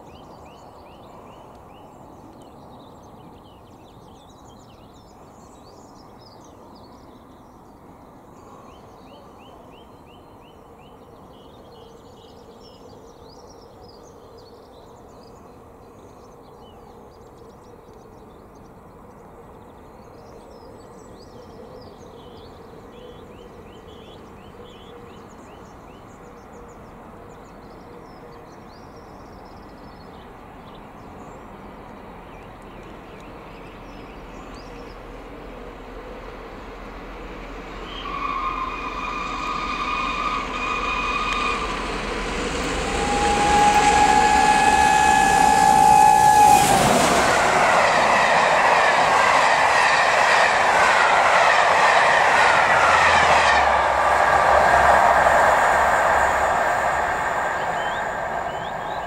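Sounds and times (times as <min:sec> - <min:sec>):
train rumble: 0:30.4 - 0:59.0
train rushing past: 0:34.8 - 0:59.0
steam locomotive whistle: 0:37.8 - 0:59.0.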